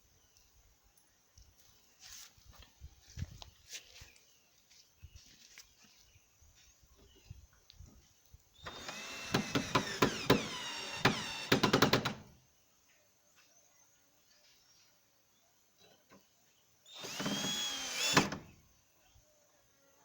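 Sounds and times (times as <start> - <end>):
drill clutch clicks: 8.6 - 12.2
power drill running: 8.6 - 12.3, 16.9 - 18.6.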